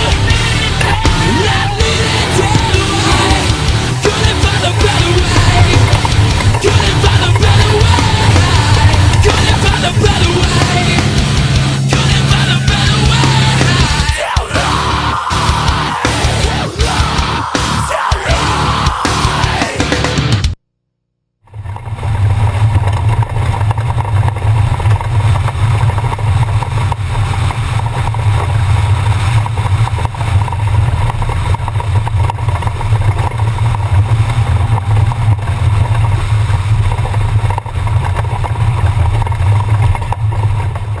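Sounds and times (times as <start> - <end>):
car engine drone: 0.0 - 20.6, 21.4 - 41.0
road and wind noise: 21.5 - 41.0.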